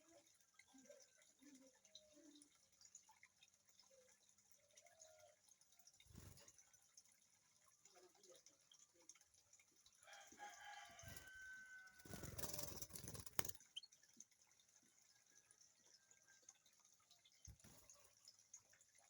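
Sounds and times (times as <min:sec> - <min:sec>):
distant rooster crowing: 0:10.1 - 0:12.3.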